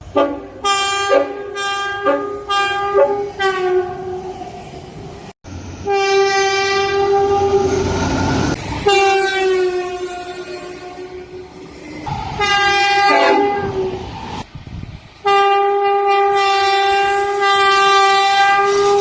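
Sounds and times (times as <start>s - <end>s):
train horn: 0.0s - 4.2s, 5.8s - 7.9s, 8.8s - 11.5s, 12.4s - 14.0s, 15.2s - 19.0s
rumble of passing train: 0.0s - 19.0s.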